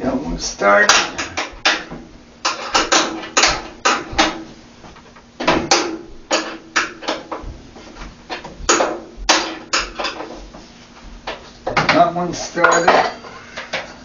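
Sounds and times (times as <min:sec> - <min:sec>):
metallic clinks and knocks: 0:12.6 - 0:13.2.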